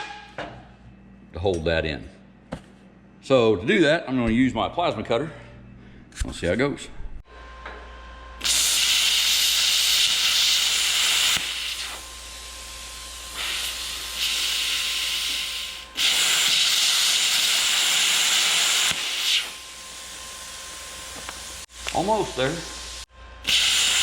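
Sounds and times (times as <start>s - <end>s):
plasma cutter hissing: 8.4s - 24.0s.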